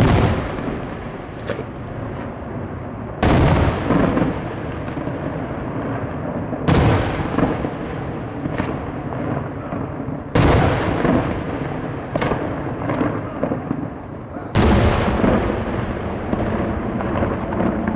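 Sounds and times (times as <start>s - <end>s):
continuous rumble: 6.6s - 17.9s
firework shells bursting: 6.7s - 17.9s.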